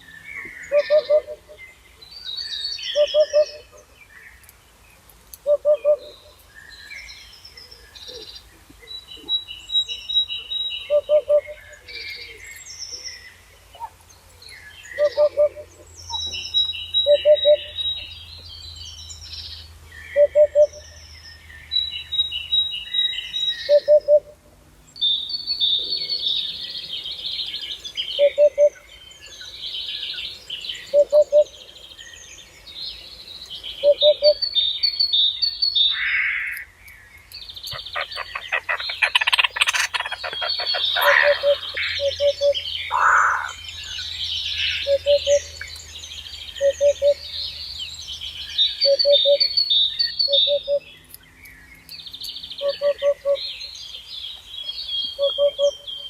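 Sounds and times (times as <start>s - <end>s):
birds chirping: 0.0s - 56.0s
loud fast rattling bird call: 37.7s - 41.7s.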